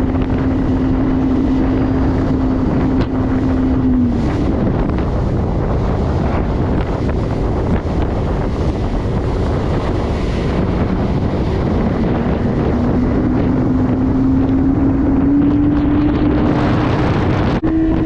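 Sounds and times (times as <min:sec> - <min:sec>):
motorboat engine running: 0:00.0 - 0:18.0
wind buffeting microphone: 0:00.0 - 0:18.0.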